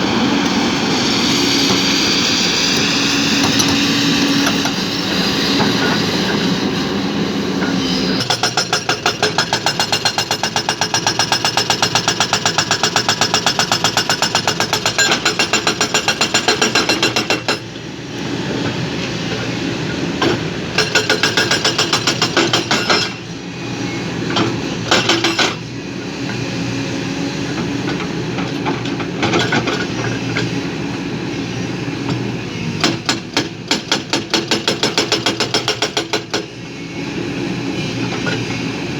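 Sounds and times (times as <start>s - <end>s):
heavy machinery noise: 0.0s - 38.9s.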